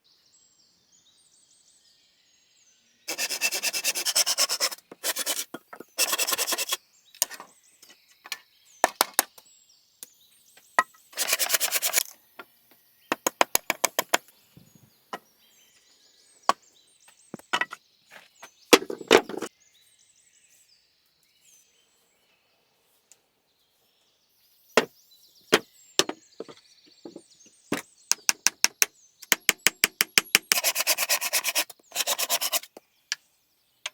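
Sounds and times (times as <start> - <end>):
hand tool scraping wood: 3.1 - 7.4, 11.2 - 12.1, 30.4 - 32.8.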